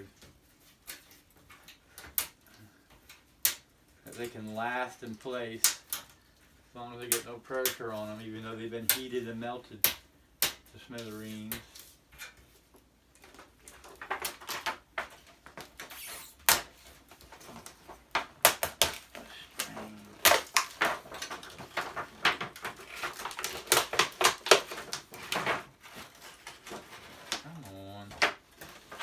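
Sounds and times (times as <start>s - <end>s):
brittle plastic cracking: 0.0s - 6.2s, 13.1s - 29.0s.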